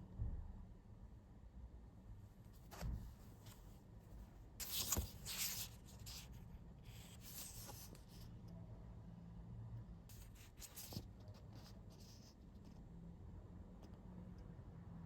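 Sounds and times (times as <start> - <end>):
soft scratchy rustles: 2.4 - 8.4, 10.1 - 12.9.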